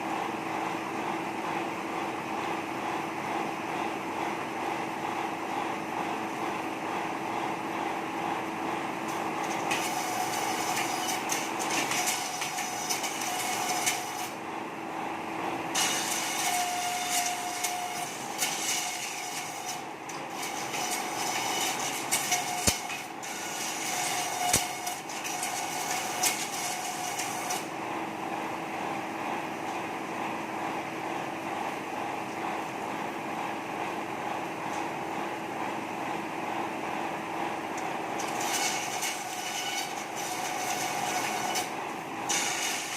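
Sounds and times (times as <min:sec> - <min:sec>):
machine motor running: 0:00.5 - 0:34.4.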